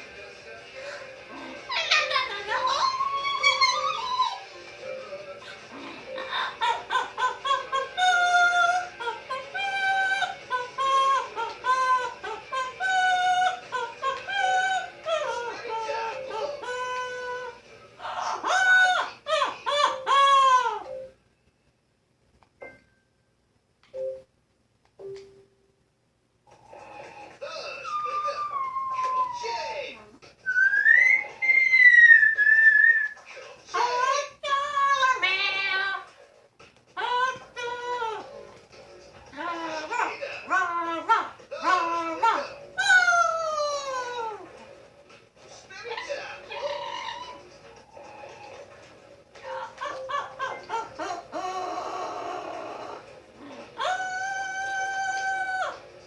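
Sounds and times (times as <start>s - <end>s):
parrot singing: 1.3s - 21.2s, 26.8s - 36.1s, 37.0s - 38.5s, 39.3s - 44.6s, 45.8s - 48.8s, 49.4s - 55.9s
parrot voice-like singing call: 1.4s - 4.5s, 6.0s - 21.1s, 30.5s - 33.2s.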